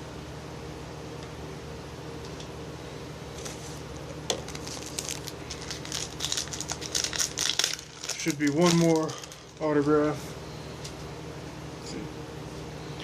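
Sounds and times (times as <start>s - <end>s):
low room hum: 0.0s - 13.0s
foil wrapper crinkling: 4.3s - 9.9s.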